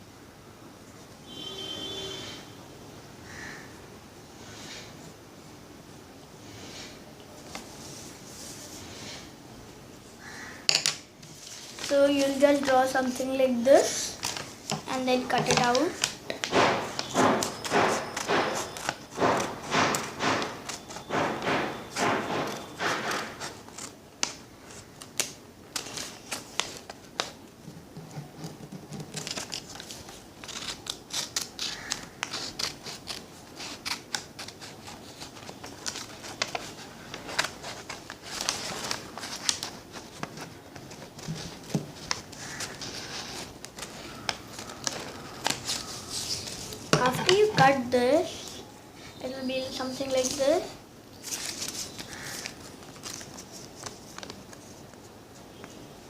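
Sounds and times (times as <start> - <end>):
paper rustle: 11.2 - 48.0, 49.8 - 55.8
scissors cutting paper: 14.1 - 24.4, 28.3 - 40.3, 41.2 - 47.8.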